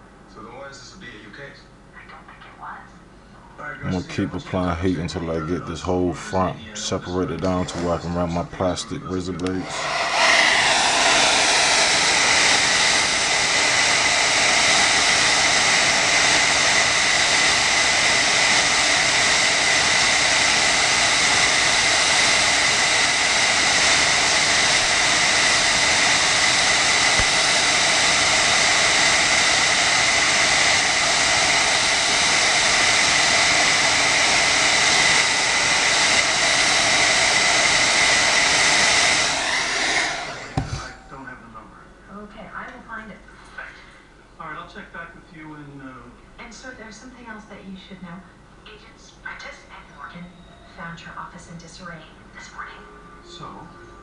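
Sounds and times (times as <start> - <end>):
blow dryer running: 3.8 - 41.4.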